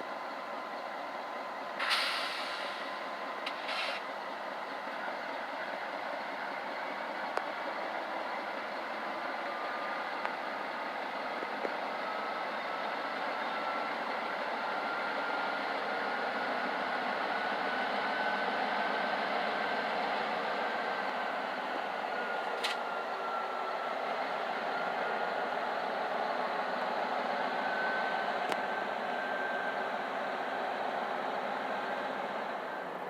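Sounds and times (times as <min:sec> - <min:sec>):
train rolling rumble: 0:00.0 - 0:33.0
air hiss: 0:01.8 - 0:02.9, 0:03.5 - 0:04.1.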